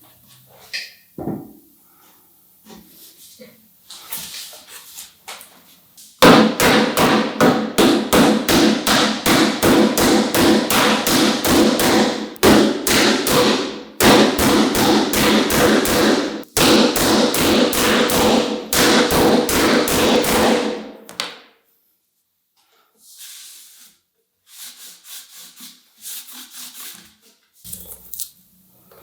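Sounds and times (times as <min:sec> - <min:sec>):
hammer blows on wood: 0:06.2 - 0:20.9.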